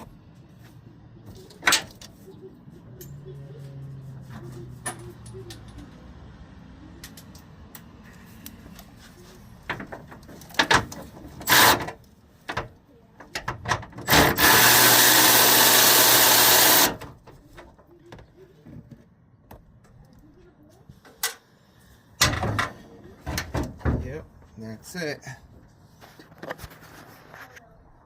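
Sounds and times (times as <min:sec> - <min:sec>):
power tool spinning: 0:14.1 - 0:17.0.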